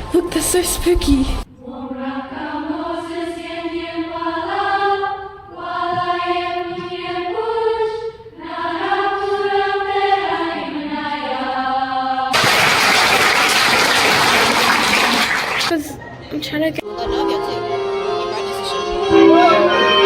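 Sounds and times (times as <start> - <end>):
wordless choir voices: 1.6 - 12.3.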